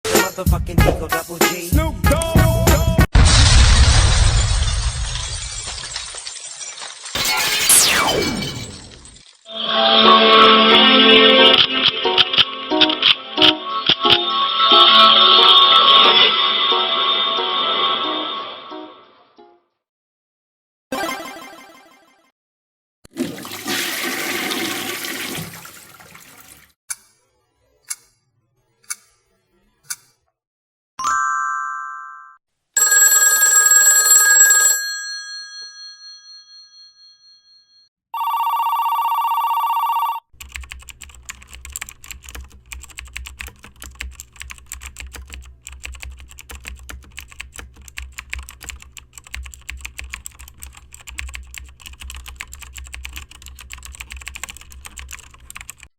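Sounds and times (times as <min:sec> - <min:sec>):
computer keyboard typing: 0:40.4 - 0:55.9.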